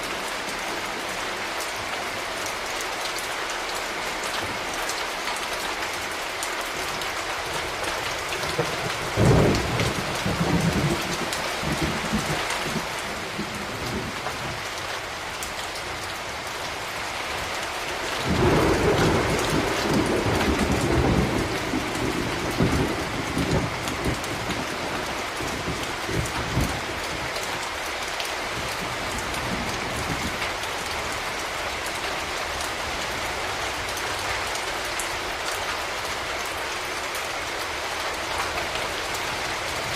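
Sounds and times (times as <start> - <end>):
steady rain hiss: 0.0 - 39.9
thunder rolling: 8.5 - 14.6, 18.2 - 27.0.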